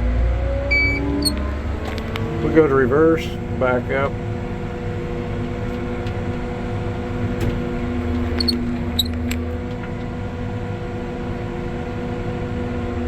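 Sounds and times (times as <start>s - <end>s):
light clicks and squeaks: 0.7s - 2.2s, 8.2s - 9.6s.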